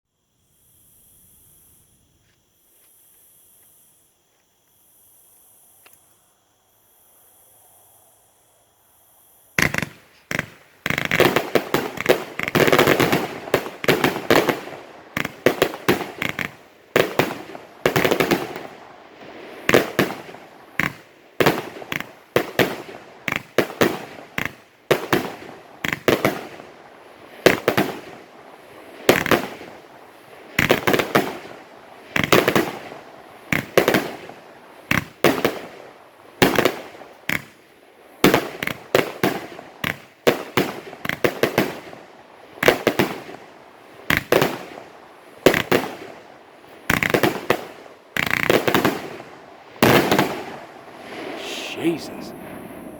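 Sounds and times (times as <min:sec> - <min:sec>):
fireworks bangs: 0:09.6 - 0:43.4, 0:46.9 - 0:52.9.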